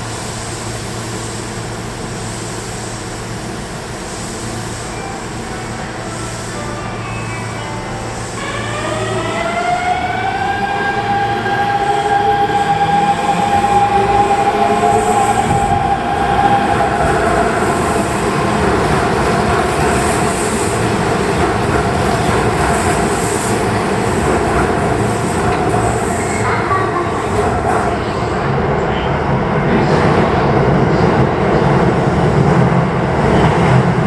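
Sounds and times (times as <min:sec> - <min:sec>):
wheels on rail: 0:08.2 - 0:28.8.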